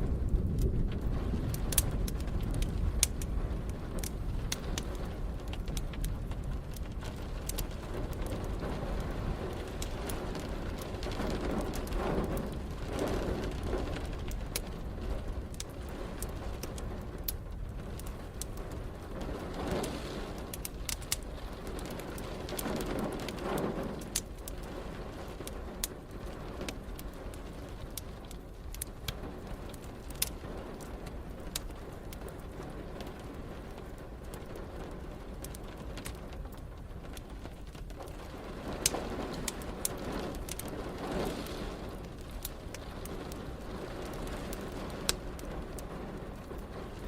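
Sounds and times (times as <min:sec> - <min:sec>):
steady rain: 0:00.0 - 0:47.0
wood fire crackling and popping: 0:00.0 - 0:47.0.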